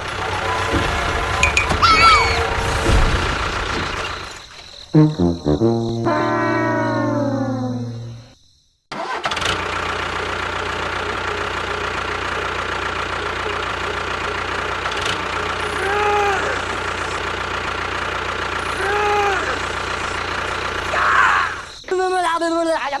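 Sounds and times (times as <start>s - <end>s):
music: 5.0s - 8.3s
short rising and falling whine: 5.0s - 8.3s.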